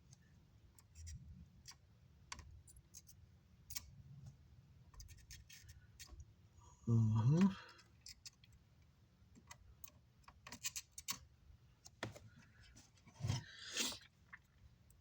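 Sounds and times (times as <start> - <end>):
brief scrape: 13.2 - 14.1.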